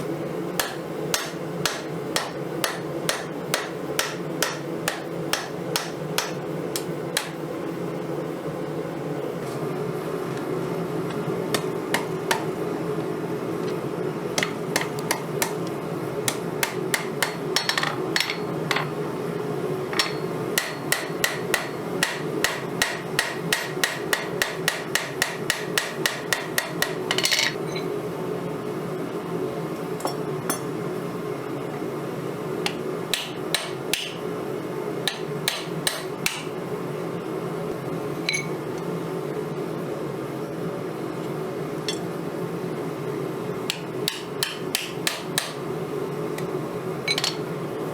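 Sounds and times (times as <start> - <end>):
steady low hum: 0.0 - 47.9.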